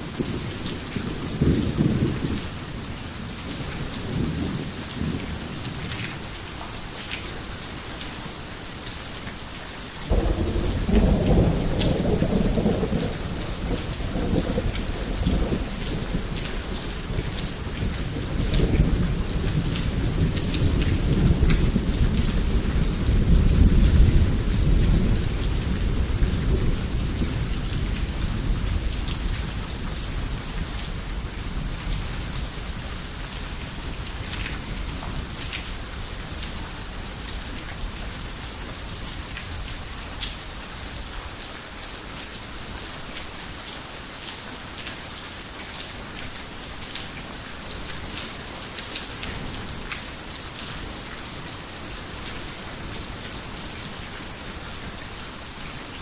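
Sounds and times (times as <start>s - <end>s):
heavy rain: 0.0s - 56.0s
deep thunder rumble: 10.1s - 16.4s.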